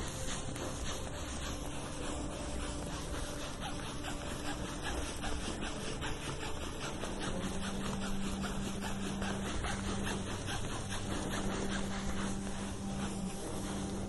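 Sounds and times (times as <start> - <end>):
rubbing strokes on a leg: 0.0 - 14.0.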